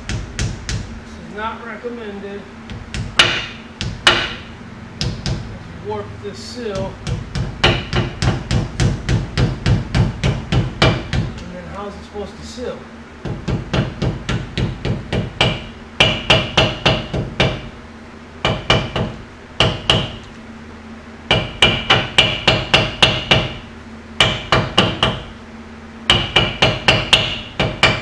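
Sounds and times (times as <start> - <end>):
hammer tapping on metal: 2.7 - 5.5, 6.7 - 11.4, 13.2 - 17.7, 18.4 - 20.3, 21.3 - 23.6, 24.2 - 25.3, 26.1 - 28.0.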